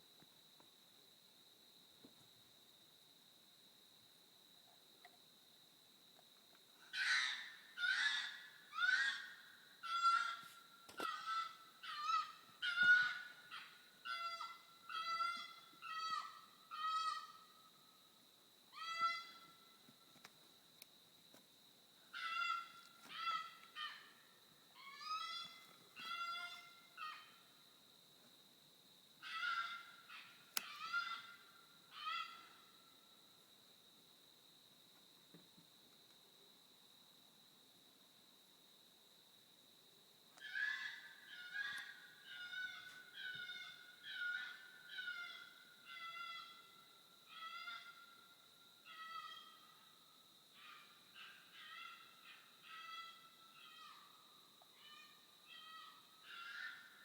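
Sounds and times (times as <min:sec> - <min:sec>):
wild animal calling: 0:06.9 - 0:17.5, 0:24.8 - 0:27.4, 0:40.4 - 0:49.8, 0:50.6 - 0:54.2
wild animal cries: 0:40.4 - 0:48.1, 0:50.6 - 0:54.1.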